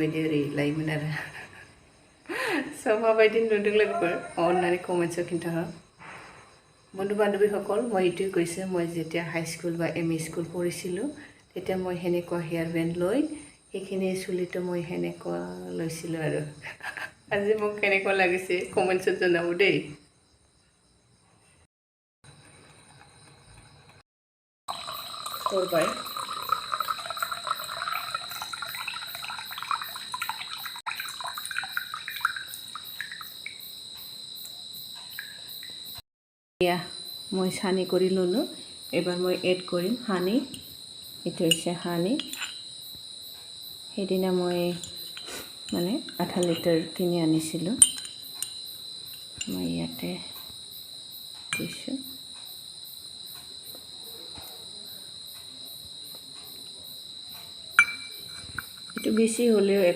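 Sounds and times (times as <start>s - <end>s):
crickets chirping: 0.0s - 24.0s, 24.7s - 36.0s, 36.6s - 59.9s
liquid trickling through strainer: 24.7s - 33.3s.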